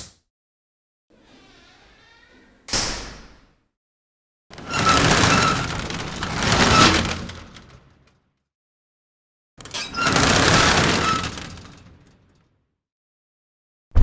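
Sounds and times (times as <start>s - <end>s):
door squeak: 1.2s - 3.4s
door scraping and rattling: 4.6s - 7.7s, 9.8s - 11.9s.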